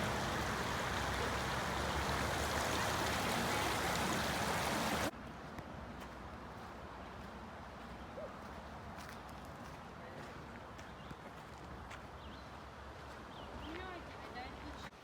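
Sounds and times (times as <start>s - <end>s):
stream water running: 0.0s - 5.2s.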